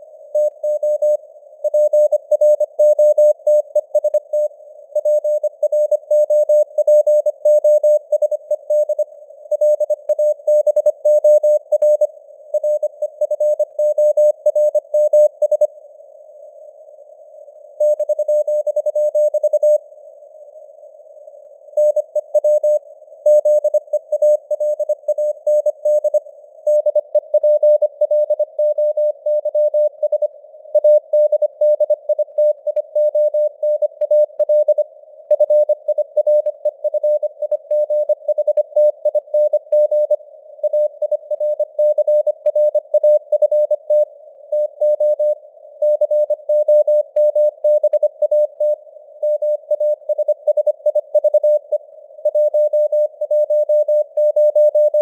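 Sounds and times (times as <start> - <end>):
morse code beeps: 21.8 - 55.0.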